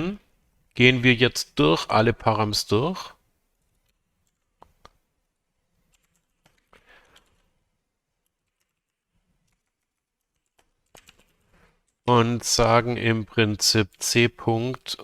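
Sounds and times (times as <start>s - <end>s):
faint computer keyboard keystrokes: 3.6s - 5.0s, 5.8s - 7.5s, 8.2s - 12.0s.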